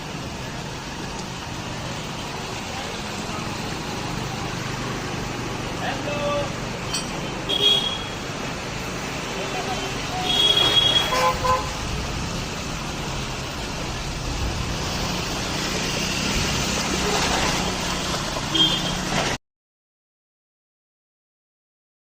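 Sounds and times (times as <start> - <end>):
road traffic: 0.0 - 19.4
vehicle horn tooting: 7.5 - 8.2, 10.2 - 11.8, 18.5 - 19.2.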